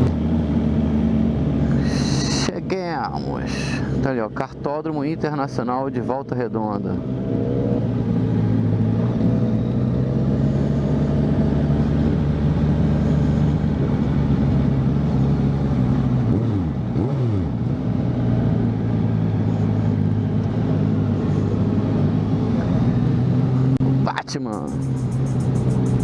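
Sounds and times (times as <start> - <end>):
motorcycle engine running: 24.5 - 26.0.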